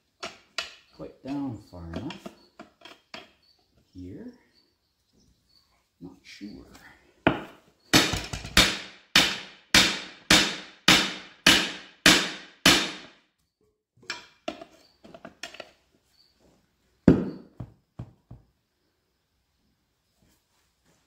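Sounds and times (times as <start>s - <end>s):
hammer striking steel: 7.3s - 13.1s.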